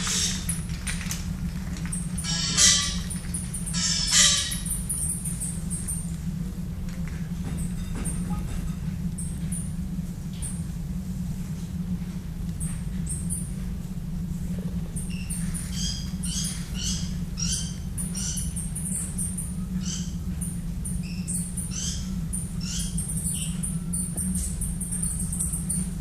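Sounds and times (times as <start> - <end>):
tropical birds chirping: 0.0 - 6.1, 14.9 - 26.0
steady low hum: 0.0 - 26.0.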